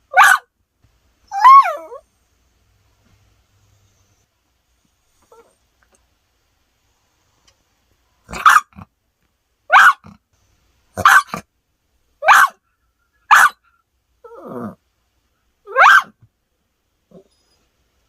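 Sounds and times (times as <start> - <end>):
dog barking: 0.1 - 0.5, 8.3 - 8.9, 9.7 - 10.2, 11.0 - 11.5, 12.2 - 12.6, 13.2 - 13.7, 15.7 - 16.2.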